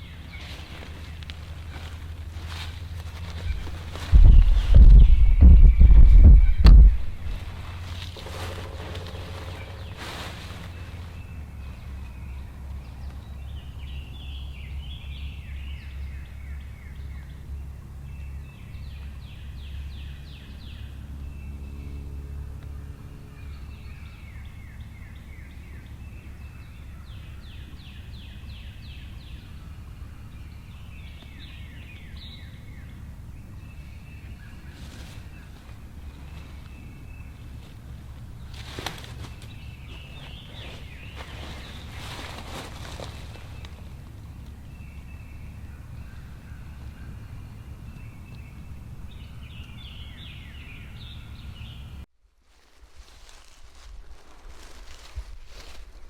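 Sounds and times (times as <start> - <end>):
birds trilling: 0.0 - 52.0
wind rumble on microphone: 0.1 - 16.2, 23.2 - 56.0.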